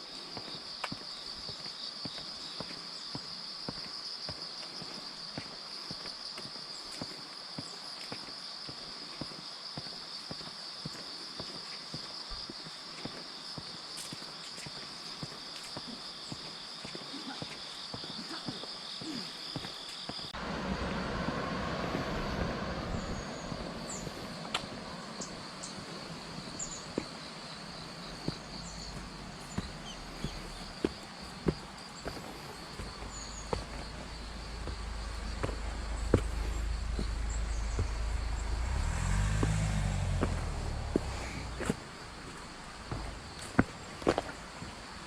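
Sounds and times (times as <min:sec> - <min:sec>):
footsteps on a trail: 0:00.0 - 0:20.4, 0:23.8 - 0:45.0
high insect drone: 0:00.0 - 0:45.0
rushing noise with low rumble: 0:20.4 - 0:26.6, 0:32.9 - 0:43.4
footsteps walking: 0:26.7 - 0:38.2, 0:39.4 - 0:44.9.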